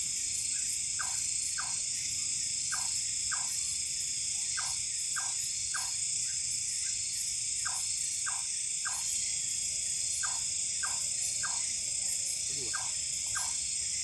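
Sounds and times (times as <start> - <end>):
insects trilling: 0.0 - 14.0.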